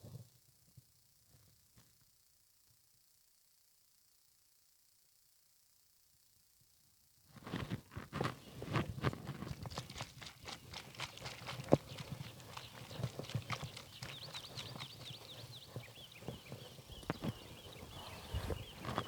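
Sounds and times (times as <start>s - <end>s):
horse hooves on hard ground: 8.2s - 19.0s.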